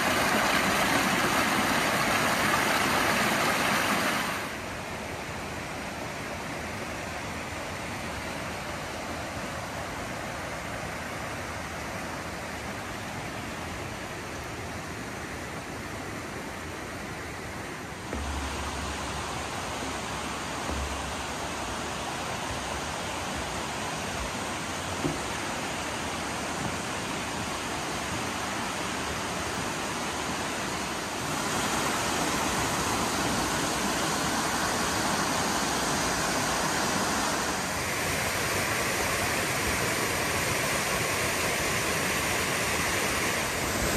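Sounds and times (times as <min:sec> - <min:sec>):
flowing water rushing: 0:00.0 - 0:43.9
faint knock: 0:25.0 - 0:25.3.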